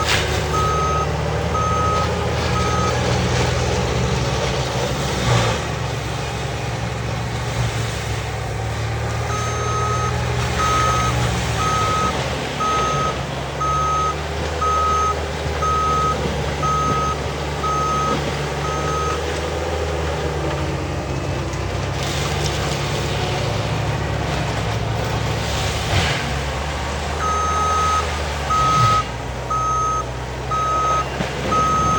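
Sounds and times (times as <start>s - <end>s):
backup alarm beeps: 0.0s - 3.0s, 9.3s - 19.2s, 27.2s - 31.9s
diesel engine running: 0.0s - 31.9s.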